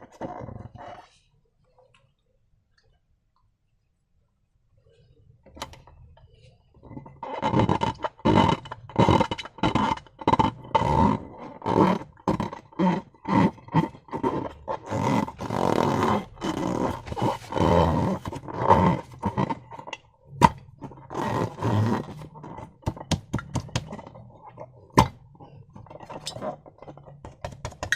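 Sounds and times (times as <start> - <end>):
rubbery rubbing: 6.8 - 27.9.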